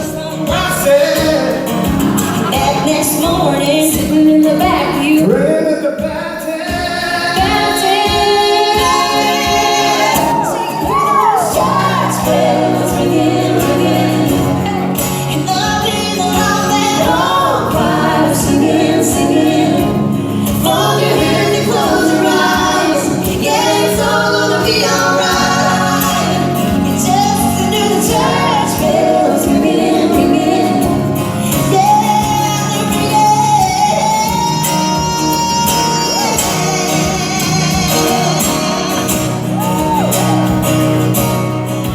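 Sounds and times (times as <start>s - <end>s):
voices singing harmony: 0.0s - 41.0s
acoustic country accompaniment: 0.0s - 41.9s
woman singing: 2.3s - 40.5s.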